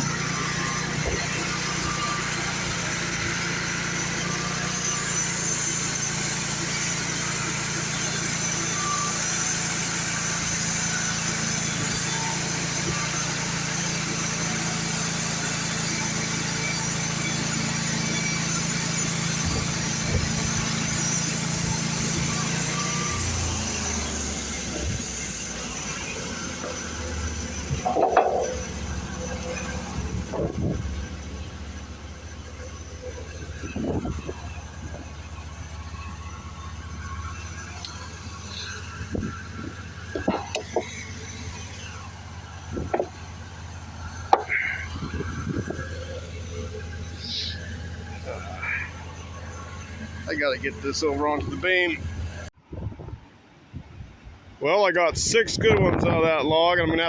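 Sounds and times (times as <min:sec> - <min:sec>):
saw cutting hiss: 0:00.0 - 0:52.0
sawmill engine running: 0:00.0 - 0:57.0
short clatter: 0:26.6 - 0:31.2.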